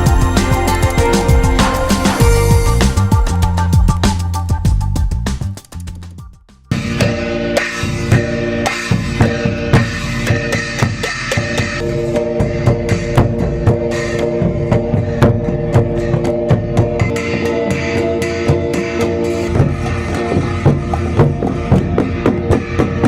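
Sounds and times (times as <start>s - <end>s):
rock band music: 0.0s - 5.2s.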